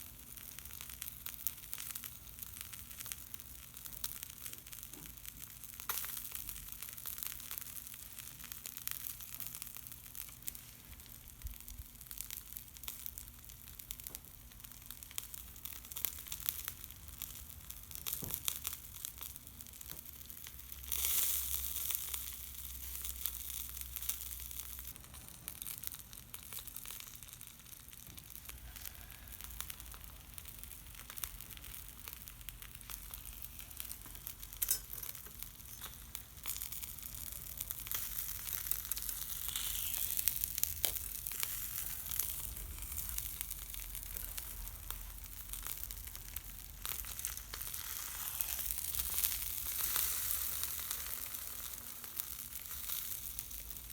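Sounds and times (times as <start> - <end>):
fish sizzling over charcoal: 0.0 - 53.9.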